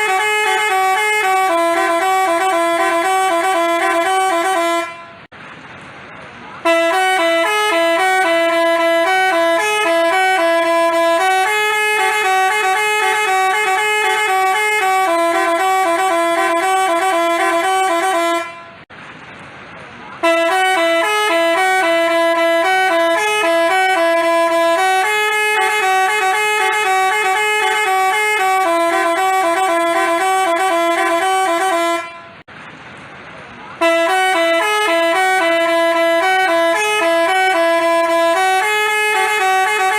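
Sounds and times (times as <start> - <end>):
multi-tone bus horn melody: 0.0 - 5.3, 6.6 - 18.9, 20.2 - 32.5, 33.8 - 39.9.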